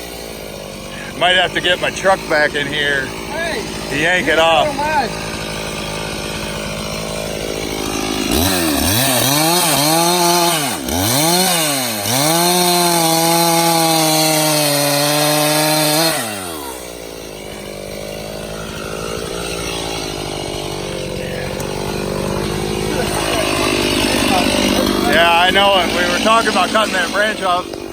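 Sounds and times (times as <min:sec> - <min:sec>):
two-stroke chainsaw revving: 0:00.0 - 0:27.9.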